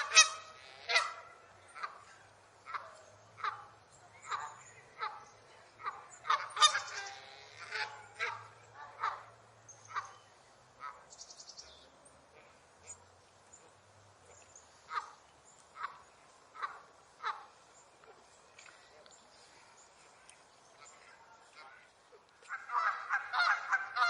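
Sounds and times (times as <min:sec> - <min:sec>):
geese honking: 0:00.0 - 0:11.1, 0:14.7 - 0:17.7, 0:20.8 - 0:24.0.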